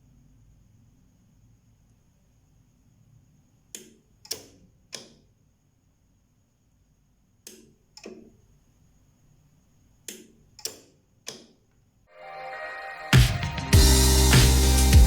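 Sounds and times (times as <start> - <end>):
faint high tone: 12.1 - 13.8.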